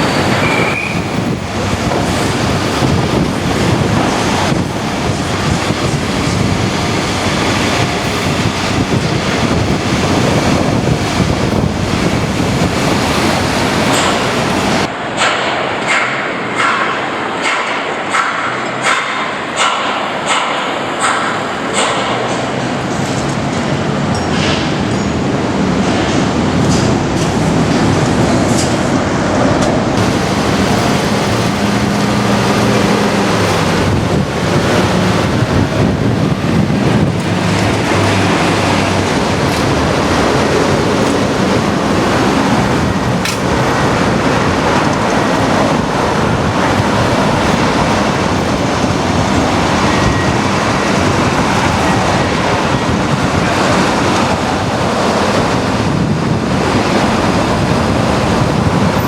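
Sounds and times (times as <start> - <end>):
wind on microphone: 0.0 - 14.9, 22.2 - 59.0
passing traffic: 0.0 - 59.0.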